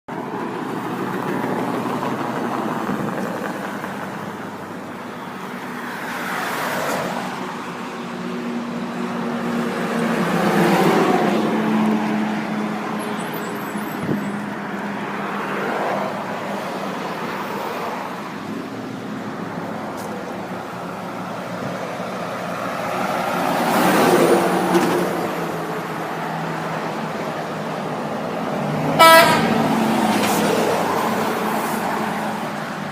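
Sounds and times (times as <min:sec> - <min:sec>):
vehicles passing: 0:00.1 - 0:32.9
truck horn blast: 0:29.0 - 0:29.7.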